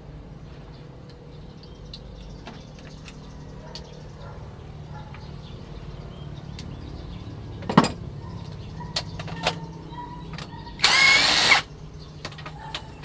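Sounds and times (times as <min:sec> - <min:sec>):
sharp metallic clicks: 0:10.4 - 0:13.0.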